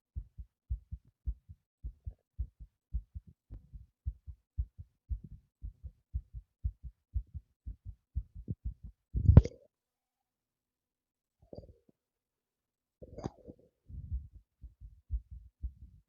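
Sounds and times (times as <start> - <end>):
fast heartbeat: 0.1 - 9.6, 13.9 - 16.0.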